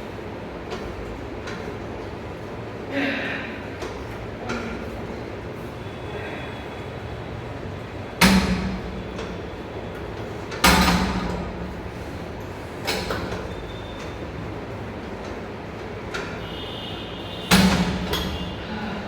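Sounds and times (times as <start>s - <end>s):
gym equipment clanking: 8.2s - 16.5s, 17.5s - 19.0s.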